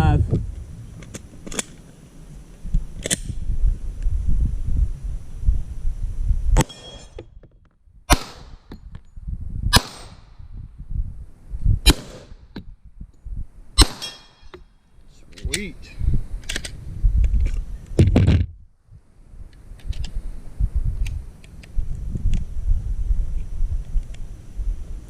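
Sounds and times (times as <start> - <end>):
handgun shots with echo: 8.1 - 8.6, 9.7 - 10.3, 11.9 - 12.4, 13.8 - 14.4.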